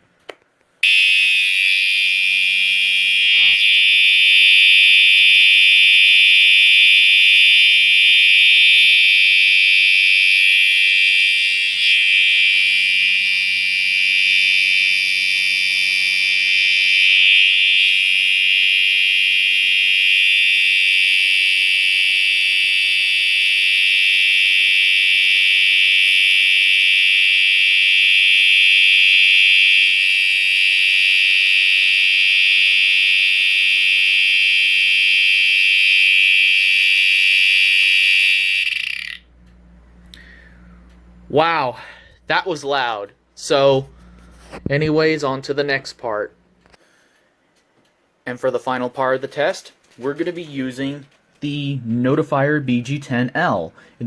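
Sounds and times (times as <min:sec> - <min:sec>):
high-pitched electronic horn: 0:00.8 - 0:39.3.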